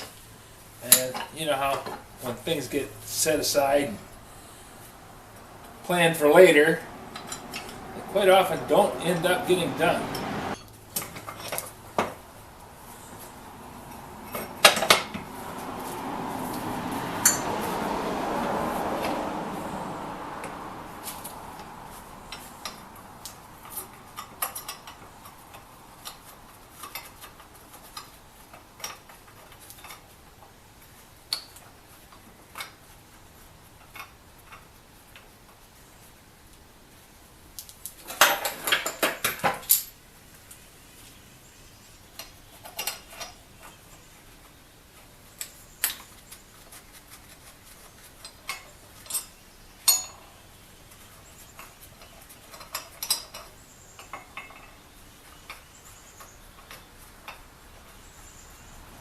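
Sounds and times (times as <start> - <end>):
metal clinks and taps: 17.2 - 17.6, 48.2 - 50.3.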